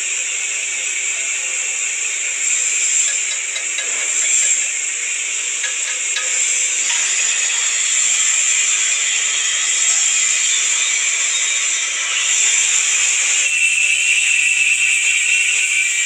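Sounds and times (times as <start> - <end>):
arc welding hiss and crackle: 0.0 - 16.0.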